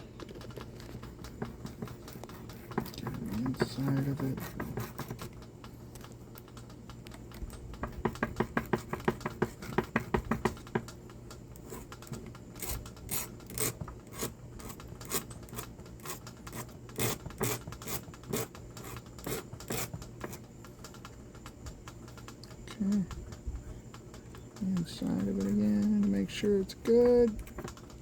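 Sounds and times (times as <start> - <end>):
hand file rasping on metal: 16.0 - 19.9.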